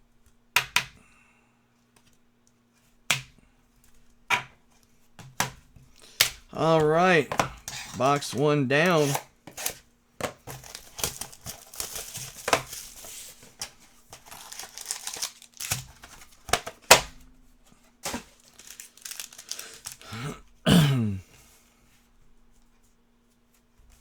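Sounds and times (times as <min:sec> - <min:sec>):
plastic and foil wrappers crinkling: 0:10.4 - 0:17.0, 0:18.0 - 0:20.2.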